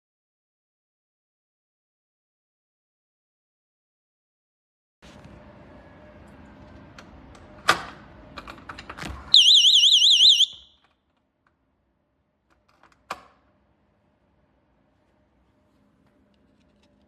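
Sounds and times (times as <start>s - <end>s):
warbling alarm siren: 9.4s - 10.8s.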